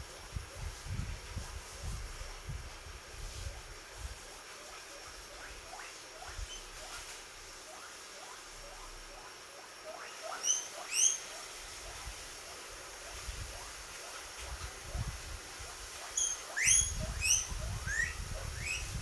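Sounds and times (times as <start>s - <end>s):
guinea pig squeaking: 4.3s - 19.0s.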